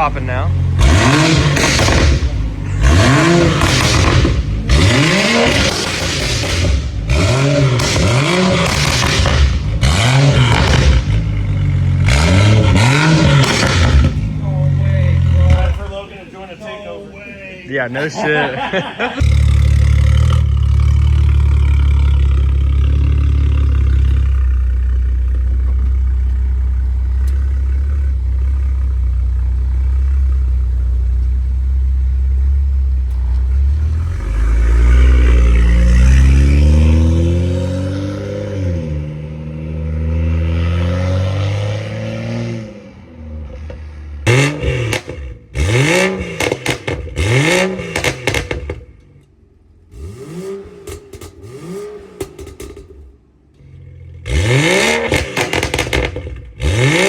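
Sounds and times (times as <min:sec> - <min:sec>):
car engine droning and revving: 0:00.0 - 0:57.0
exhaust crackle: 0:00.0 - 0:57.0.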